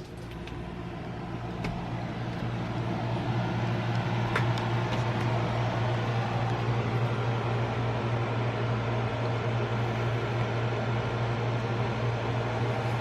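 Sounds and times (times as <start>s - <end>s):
steady mechanical hum: 0.0s - 13.0s.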